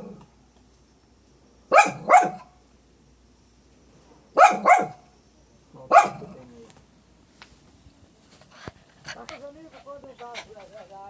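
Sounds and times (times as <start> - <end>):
dog barking: 1.7 - 2.6, 4.4 - 5.1, 5.9 - 6.4.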